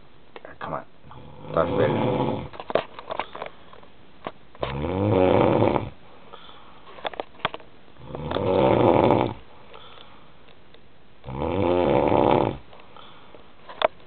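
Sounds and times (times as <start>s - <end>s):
man snoring: 1.1s - 2.6s, 4.6s - 6.0s, 8.0s - 9.4s, 11.2s - 12.6s.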